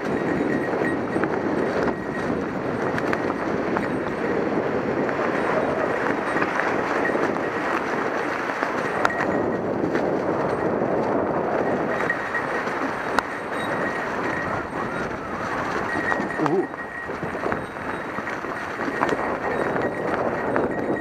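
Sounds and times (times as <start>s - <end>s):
bike tyres rumbling and rattling: 0.0s - 21.0s.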